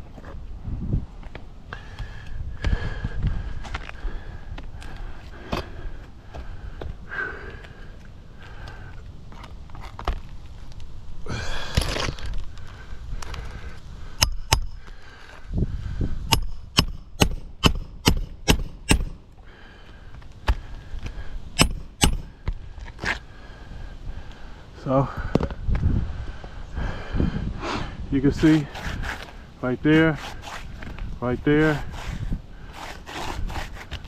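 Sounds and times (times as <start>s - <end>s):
sharp knocks and cracks: 16.3s - 19.2s
scraping rush: 28.3s - 34.0s.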